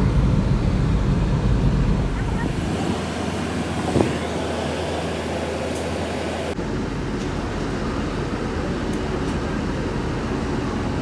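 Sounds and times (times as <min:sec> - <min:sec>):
car cabin road rumble: 0:00.0 - 0:06.6.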